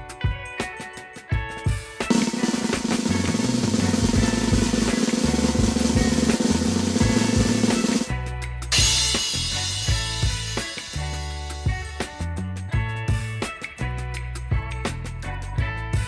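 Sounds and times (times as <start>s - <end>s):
background music with bass line: 1.8s - 16.0s
snare drum roll: 2.1s - 8.1s.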